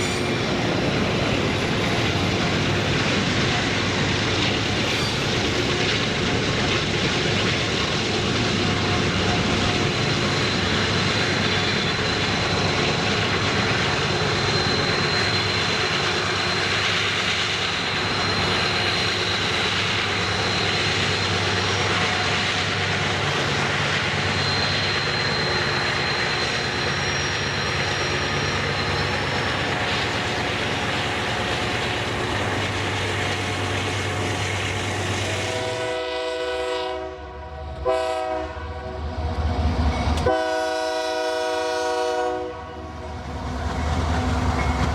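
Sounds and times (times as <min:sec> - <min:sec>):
freight train rumbling past: 0:00.0 - 0:44.9
train horn blasts: 0:35.4 - 0:39.0, 0:40.2 - 0:43.0.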